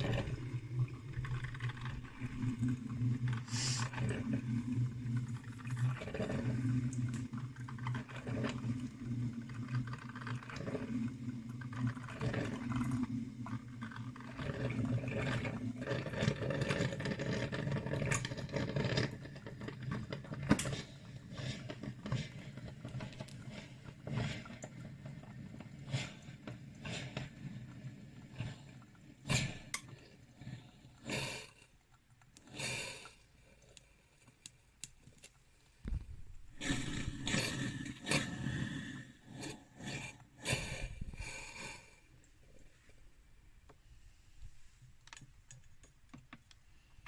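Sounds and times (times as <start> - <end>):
coffee maker spluttering and popping: 0.0 - 31.1, 31.7 - 41.3
coffee maker humming: 0.0 - 31.5, 35.9 - 43.8.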